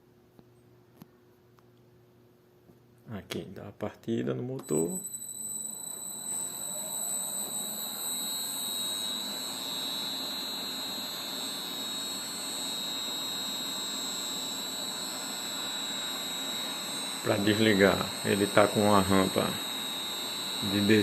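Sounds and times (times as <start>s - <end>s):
milling machine motor whining: 4.6s - 21.0s.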